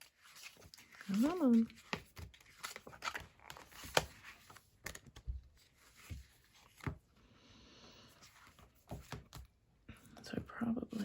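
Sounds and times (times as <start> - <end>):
paper sticker sheets rustling: 0.0 - 7.0.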